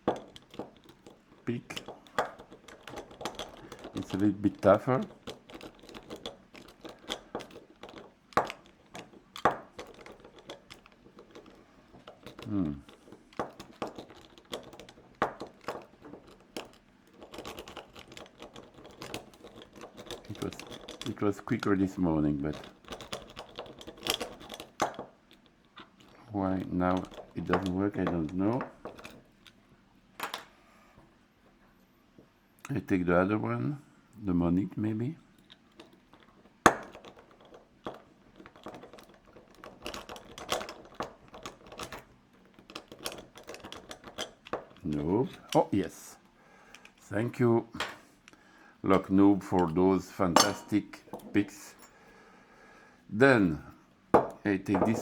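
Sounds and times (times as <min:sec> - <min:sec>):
lock pick clicking and scraping: 0:00.0 - 0:26.2, 0:26.9 - 0:29.6, 0:35.3 - 0:45.6, 0:46.7 - 0:47.0.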